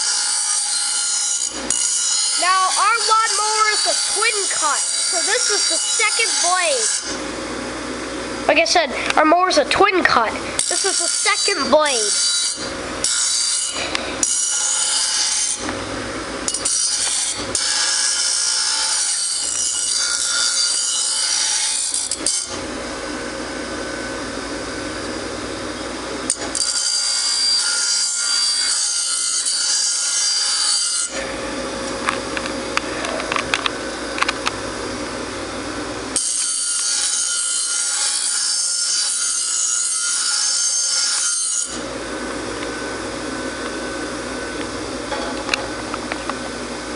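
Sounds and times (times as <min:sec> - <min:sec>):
blade grinding on wheel: 0:00.0 - 0:07.2, 0:10.0 - 0:15.7
grinder motor hum: 0:00.0 - 0:36.6, 0:41.6 - 0:46.9.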